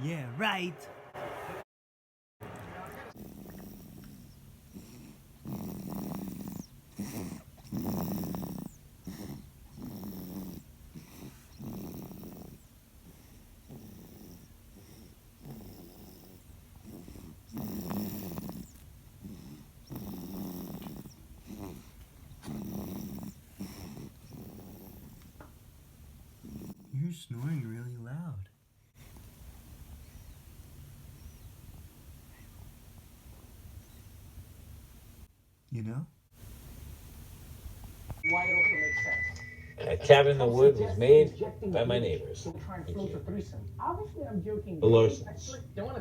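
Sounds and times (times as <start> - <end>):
baby snoring loudly: 3.1 - 25.3, 26.4 - 26.9.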